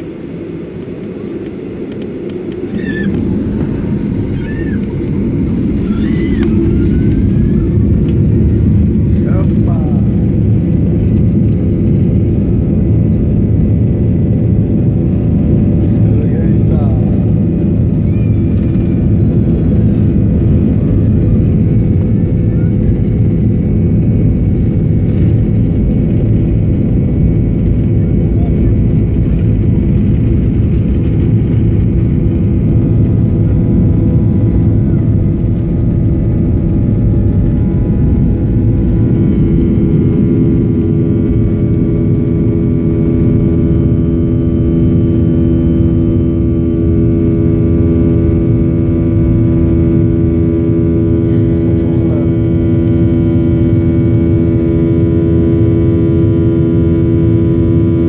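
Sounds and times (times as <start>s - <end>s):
airplane cabin rumble: 0.0s - 58.0s
steady humming tones: 0.0s - 58.0s.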